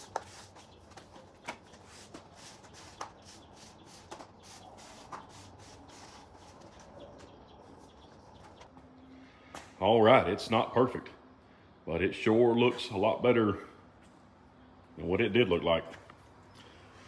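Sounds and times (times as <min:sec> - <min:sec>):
broom sweeping: 0:00.0 - 0:07.0.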